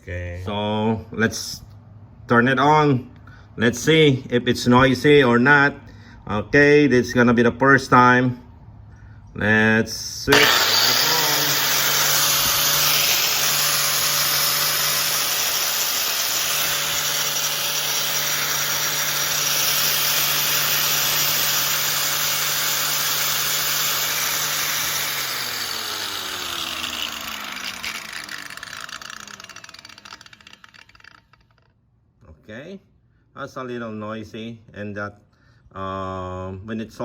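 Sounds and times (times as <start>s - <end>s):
angle grinder spinning: 10.3s - 31.7s.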